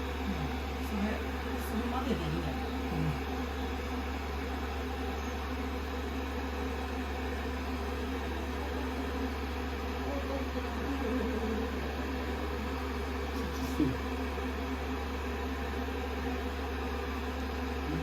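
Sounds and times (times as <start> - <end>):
hair dryer blowing: 10.5 - 14.9.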